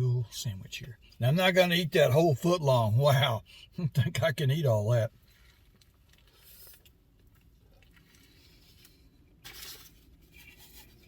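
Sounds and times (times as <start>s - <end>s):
soft rustling of sandwich: 5.1s - 11.0s.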